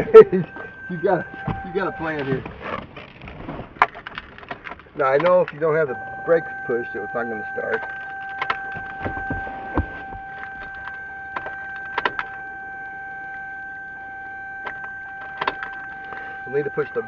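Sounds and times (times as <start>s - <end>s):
steady high-pitched tone: 0.0s - 2.5s, 5.0s - 17.0s
ignition key clicks: 3.9s - 12.5s, 14.6s - 16.2s.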